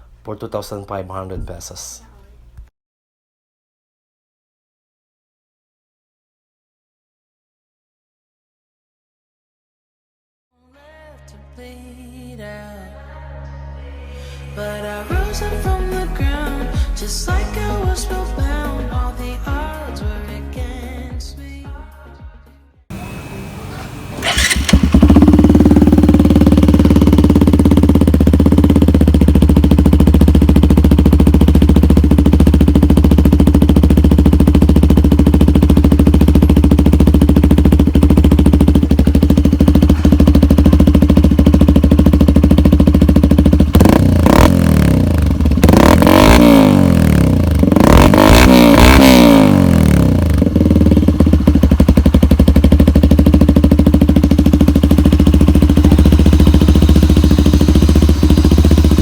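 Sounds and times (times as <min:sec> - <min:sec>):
motorcycle engine idling and revving: 0:22.9 - 0:59.0.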